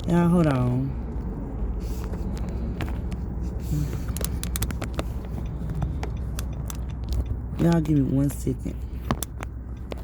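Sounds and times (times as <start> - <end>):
low hum inside car: 0.0 - 10.0
phone mount clicks and rattling: 4.2 - 7.8.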